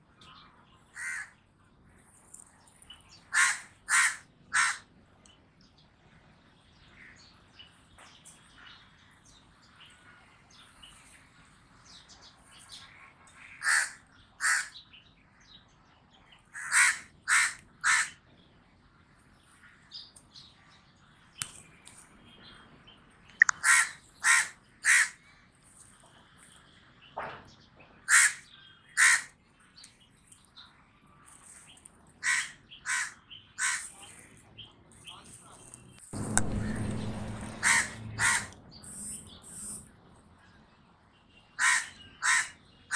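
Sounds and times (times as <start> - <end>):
raven calling: 0.9 - 1.4, 3.3 - 4.9, 13.4 - 14.8, 16.6 - 18.2, 23.4 - 25.2, 28.1 - 29.3, 32.2 - 34.2, 36.2 - 39.7, 41.6 - 42.9.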